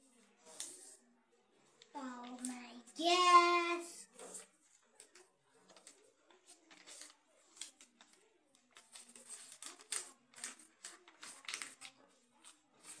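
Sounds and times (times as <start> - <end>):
paper being folded and creased: 4.2 - 13.0.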